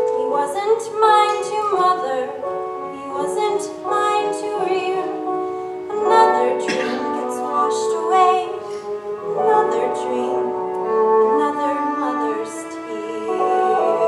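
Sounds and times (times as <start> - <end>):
instrumental accompaniment: 0.0 - 14.0
person singing: 3.0 - 14.0.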